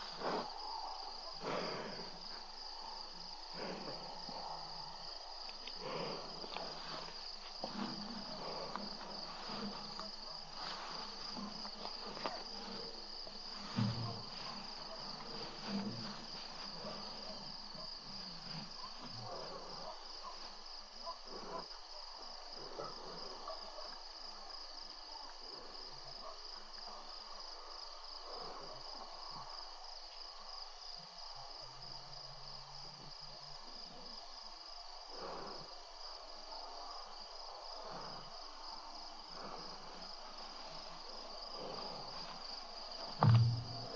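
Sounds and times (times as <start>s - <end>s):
crickets trilling: 0.0s - 43.9s
low thump: 43.2s - 43.9s
soft knocks and rustles: 43.2s - 43.9s.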